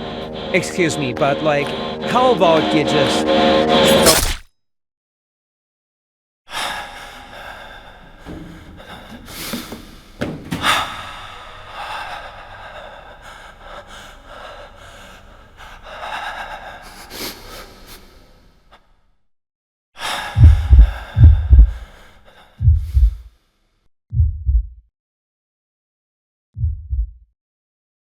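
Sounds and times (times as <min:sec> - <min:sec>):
breathy gasping: 0:20.0 - 0:23.3
heartbeat thumps: 0:20.4 - 0:21.9, 0:22.6 - 0:23.3, 0:24.1 - 0:24.8, 0:26.6 - 0:27.2.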